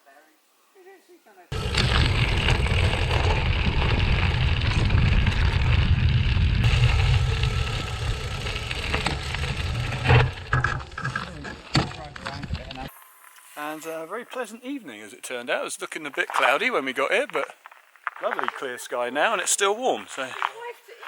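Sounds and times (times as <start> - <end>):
tyres crunching on gravel: 1.5 - 12.9, 16.0 - 20.8
wind rumbling on microphone: 1.5 - 12.9.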